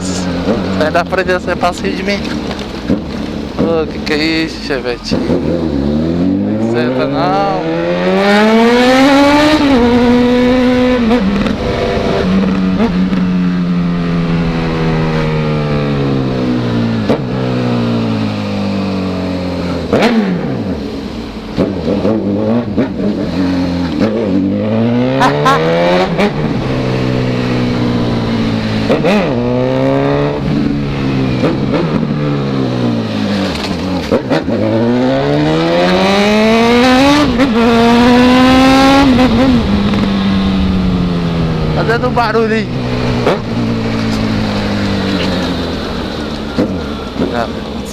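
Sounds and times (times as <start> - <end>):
motorcycle engine revving: 0.0 - 47.9
exhaust cracks: 39.0 - 47.9.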